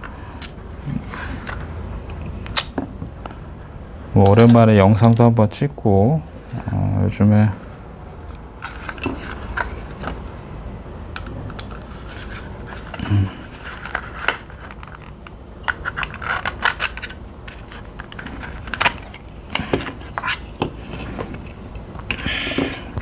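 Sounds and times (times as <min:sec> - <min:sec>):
plastic scraping: 0:07.6 - 0:10.3, 0:11.2 - 0:23.0.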